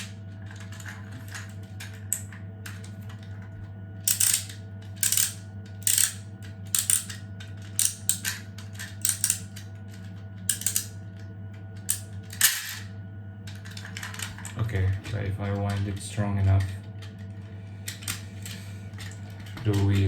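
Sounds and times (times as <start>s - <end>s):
wind-up spring ratchet clacking: 4.0s - 9.6s, 10.5s - 10.9s.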